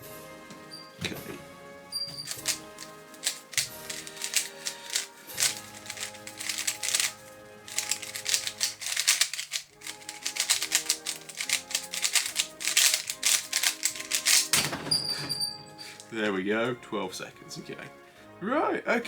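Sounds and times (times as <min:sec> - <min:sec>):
background music: 0:00.0 - 0:19.0
speed cube clicking and clacking: 0:02.0 - 0:14.7.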